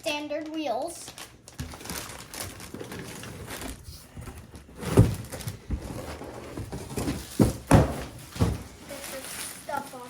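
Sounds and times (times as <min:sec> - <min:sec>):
packaging rustling: 0:00.4 - 0:10.0.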